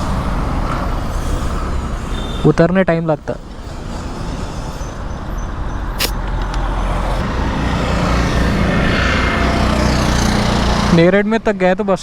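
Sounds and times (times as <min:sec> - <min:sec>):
traffic noise: 0:00.0 - 0:12.0
motorcycle engine running: 0:03.2 - 0:11.0
sharp click: 0:06.0 - 0:07.2.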